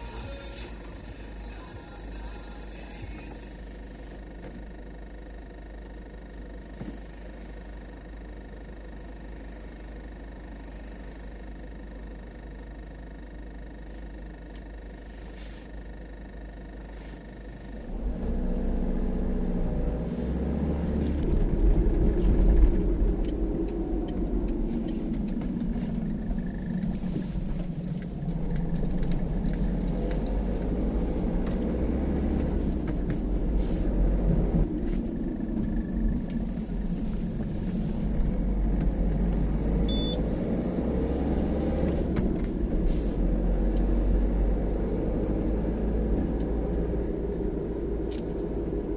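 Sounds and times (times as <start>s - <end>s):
road rumble: 0.0s - 48.9s
car engine accelerating: 16.9s - 48.9s.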